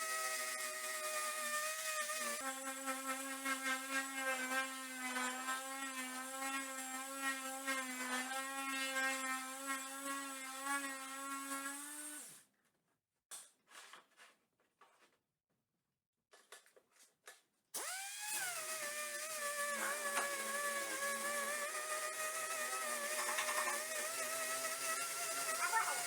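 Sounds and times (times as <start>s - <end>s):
router spindle whining: 17.8s - 26.0s.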